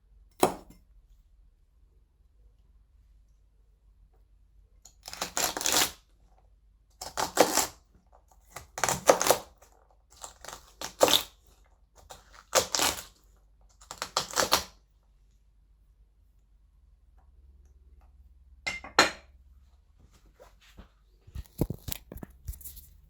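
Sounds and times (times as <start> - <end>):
knife chopping on a board: 0.4 - 0.8.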